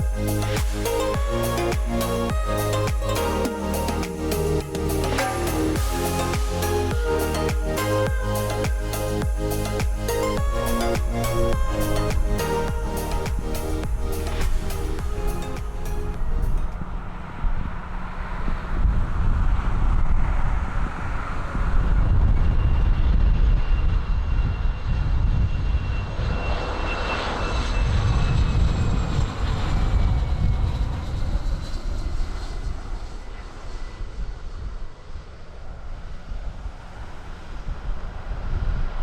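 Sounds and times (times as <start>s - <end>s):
wind rumble on microphone: 0.0s - 39.0s
aircraft engine whine: 10.6s - 39.0s.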